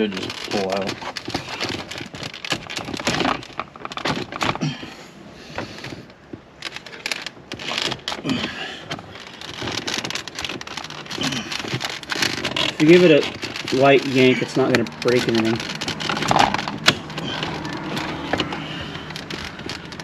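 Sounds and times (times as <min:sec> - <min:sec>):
plastic trim clips crackling: 0:06.6 - 0:20.0.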